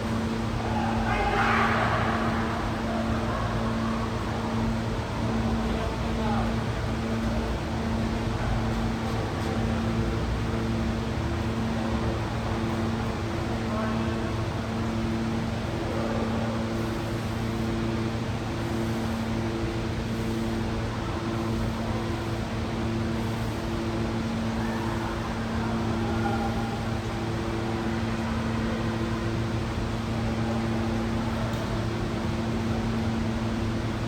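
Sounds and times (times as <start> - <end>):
steady machine hum: 0.0 - 34.0.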